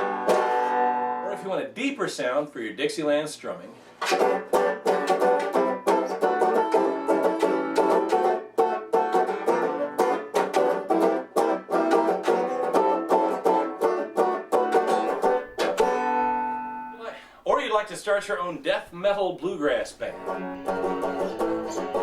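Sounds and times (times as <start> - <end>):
banjo strummed chords: 0.0 - 1.6, 4.0 - 17.0, 19.4 - 22.0.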